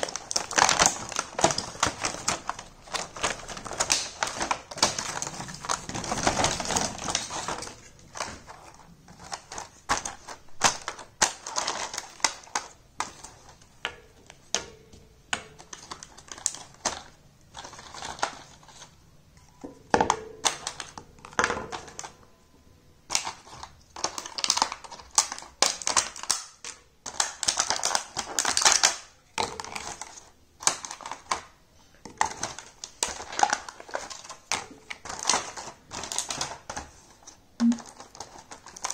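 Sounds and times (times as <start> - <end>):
plastic toy pieces clicking: 23.1 - 31.5.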